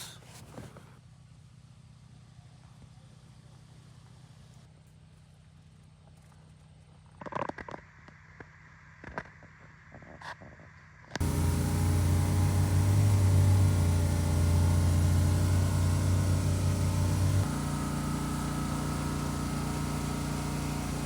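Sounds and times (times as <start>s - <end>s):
engine idling: 11.2s - 21.0s.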